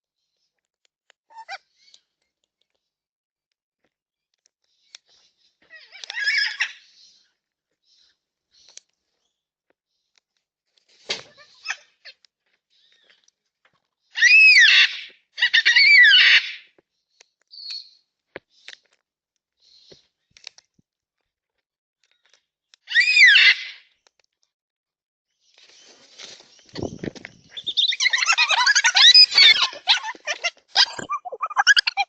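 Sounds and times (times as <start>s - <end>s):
cockatoos harsh calls: 14.2s - 16.7s, 22.9s - 23.8s, 27.5s - 32.0s.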